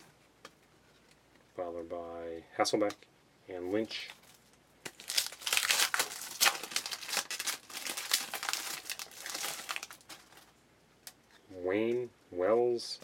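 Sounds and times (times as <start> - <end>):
trading cards rustling and snapping: 4.0 - 10.5.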